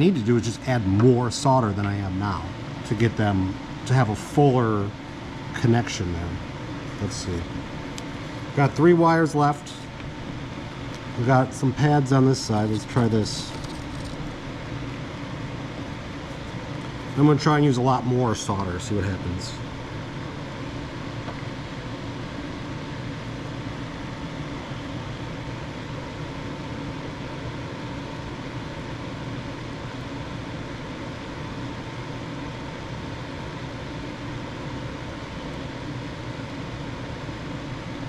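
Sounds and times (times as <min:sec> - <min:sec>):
background hum and hiss: 0:00.0 - 0:38.0
faint steady whine: 0:00.0 - 0:38.0.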